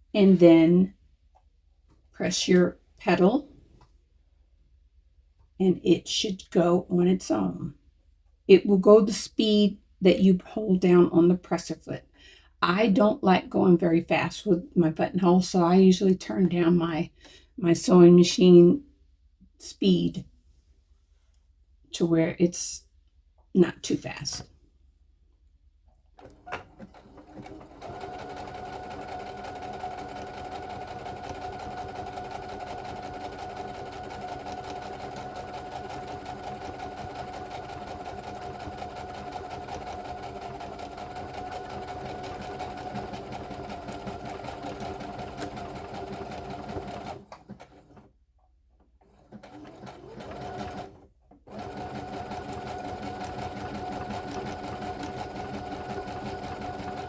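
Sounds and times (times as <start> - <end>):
sewing machine stitching: 26.2 - 48.1, 49.0 - 57.0.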